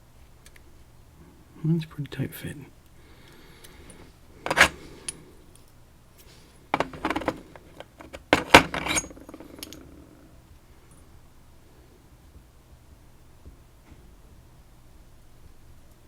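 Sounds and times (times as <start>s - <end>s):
metal parts clinking: 3.8s - 5.6s, 6.7s - 10.3s.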